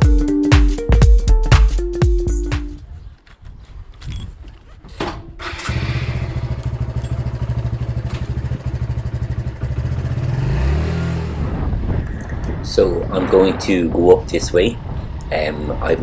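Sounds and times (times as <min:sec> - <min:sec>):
motorcycle engine idling and revving: 0:05.4 - 0:12.0.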